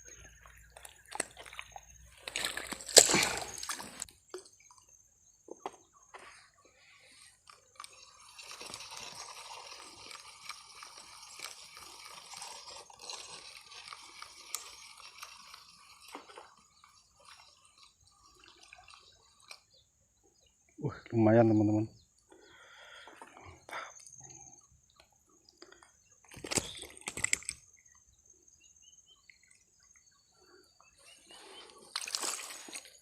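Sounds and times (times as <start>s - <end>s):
water splashing: 0.0s - 4.1s, 31.4s - 33.0s
small wet clicks: 0.0s - 5.0s, 7.1s - 20.4s, 22.2s - 28.0s, 29.2s - 33.0s
water trickling and dripping: 0.0s - 5.0s, 7.5s - 20.8s.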